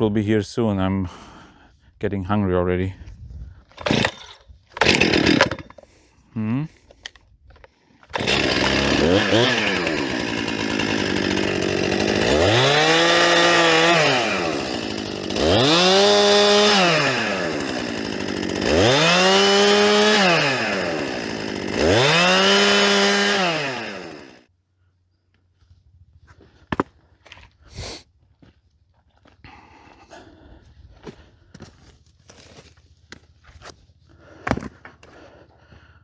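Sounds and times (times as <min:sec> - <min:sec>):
chainsaw revving: 0:03.8 - 0:05.8, 0:08.1 - 0:24.5.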